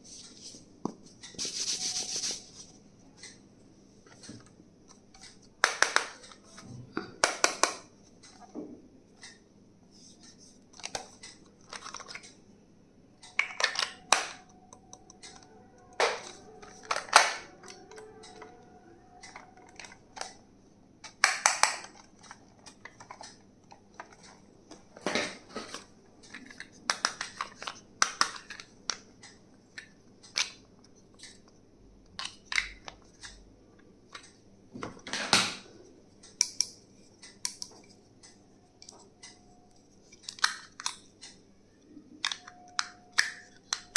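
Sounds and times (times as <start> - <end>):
faint steady tone: 41.3 - 43.9.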